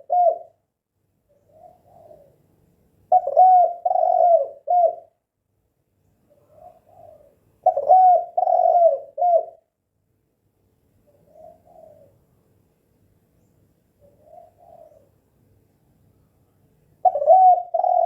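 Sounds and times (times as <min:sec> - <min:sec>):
dove cooing: 0:00.0 - 0:00.6, 0:01.3 - 0:02.5, 0:03.1 - 0:05.2, 0:06.3 - 0:09.7, 0:11.1 - 0:12.2, 0:14.0 - 0:15.2, 0:17.0 - 0:18.0.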